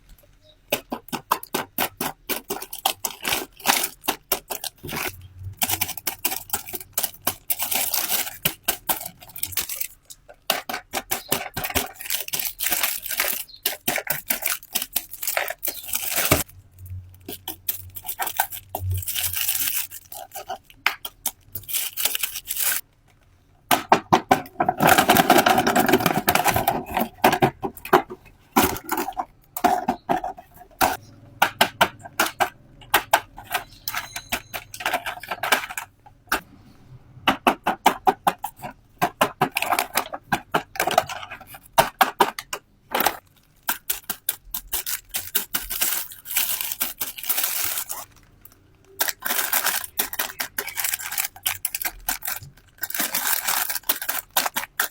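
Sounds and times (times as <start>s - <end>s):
packaging rustling and tearing: 0.9s - 22.9s, 24.8s - 30.0s, 42.9s - 54.9s
sharp clicks and taps: 26.0s - 36.4s.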